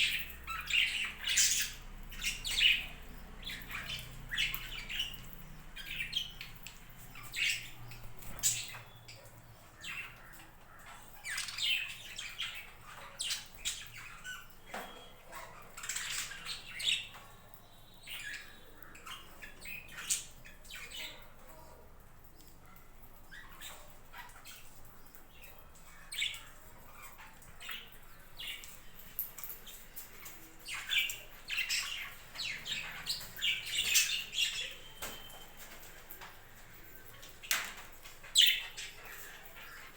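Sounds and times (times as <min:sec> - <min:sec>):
budgerigars chirping and squawking: 0:00.0 - 0:17.3, 0:18.0 - 0:21.5, 0:22.4 - 0:39.9.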